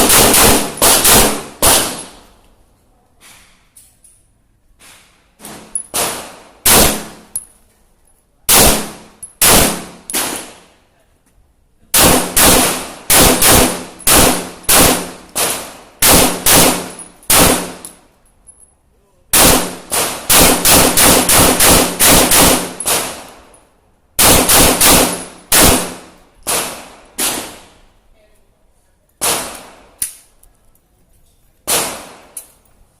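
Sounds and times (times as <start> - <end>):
pistol shots with ringing tail: 0.0 - 2.2, 5.5 - 7.3, 8.5 - 10.6, 12.0 - 17.8, 19.4 - 23.3, 24.2 - 27.7, 31.7 - 32.4.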